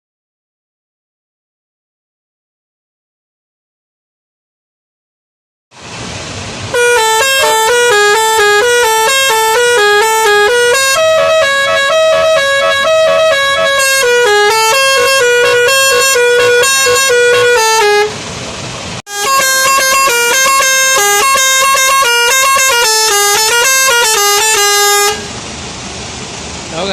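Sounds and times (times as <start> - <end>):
musical bus horn tune: 6.7 - 18.2, 19.1 - 25.4.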